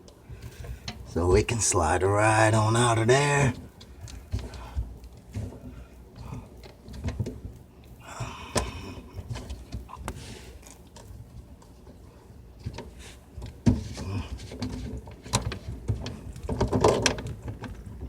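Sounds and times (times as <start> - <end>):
pipe fittings clicking and knocking: 12.6 - 18.0.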